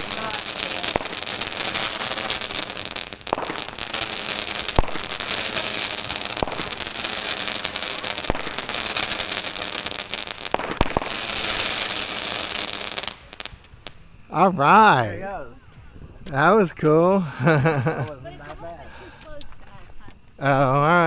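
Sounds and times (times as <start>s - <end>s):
firework pops: 0.0s - 14.2s
firework crackling hiss: 0.0s - 15.6s.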